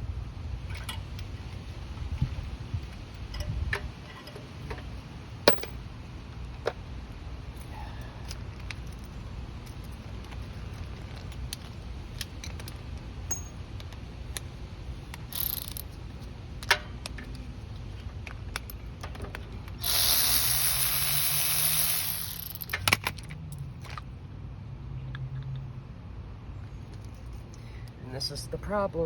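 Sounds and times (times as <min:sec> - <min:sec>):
small metal parts clinking: 0:05.5 - 0:05.8, 0:08.3 - 0:14.0, 0:15.1 - 0:17.4, 0:18.2 - 0:24.0.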